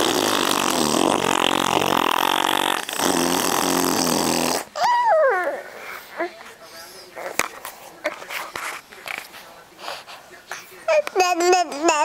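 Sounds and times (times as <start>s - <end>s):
fart-like blowing noises: 0.0s - 4.8s.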